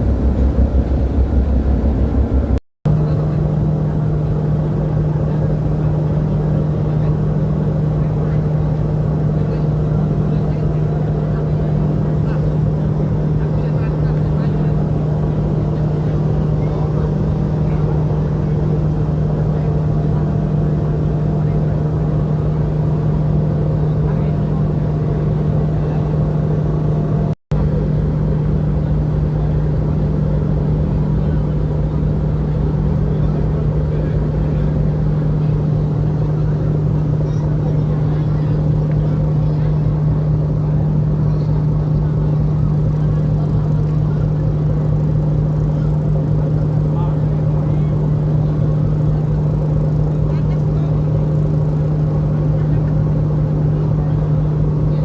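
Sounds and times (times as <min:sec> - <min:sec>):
engine drone: 0:00.0 - 0:55.0.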